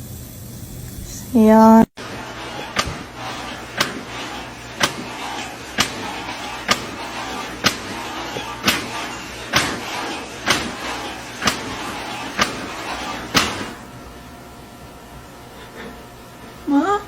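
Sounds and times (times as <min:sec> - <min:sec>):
sharp knocks: 0:02.0 - 0:13.8.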